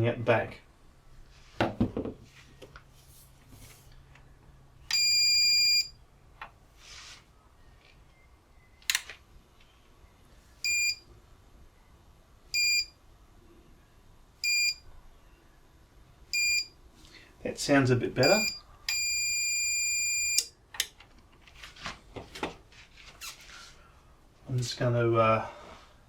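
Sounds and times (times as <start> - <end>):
knock: 1.6 - 2.2
alarm beeper beeping: 4.9 - 5.9, 10.7 - 11.0, 12.6 - 12.9, 16.4 - 16.7, 18.2 - 20.5.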